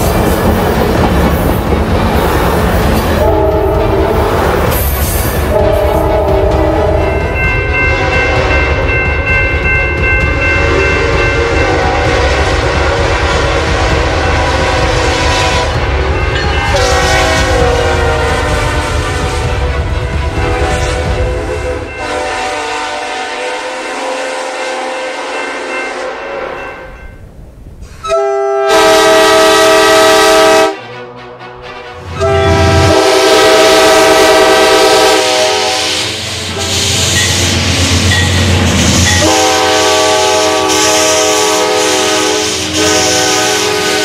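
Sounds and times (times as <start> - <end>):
train rumble and wheel clatter: 0.0 - 44.0
train air horn: 3.2 - 4.6, 5.5 - 8.8, 10.6 - 15.9, 16.5 - 26.6, 28.0 - 30.9, 32.0 - 37.2, 39.0 - 44.0.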